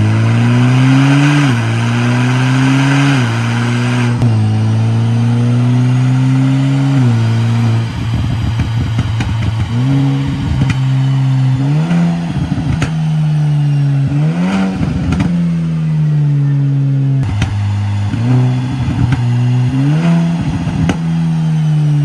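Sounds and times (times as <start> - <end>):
car engine revving: 0.0 - 22.0
exhaust pops and crackles: 7.0 - 13.2, 14.5 - 15.5, 17.2 - 21.2.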